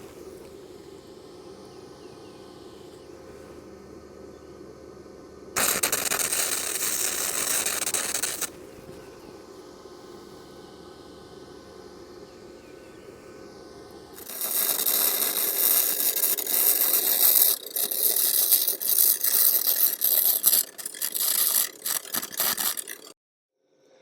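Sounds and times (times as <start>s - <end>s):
low steady hum: 0.0s - 22.9s
welding arc crackling: 5.6s - 8.8s, 14.1s - 23.2s.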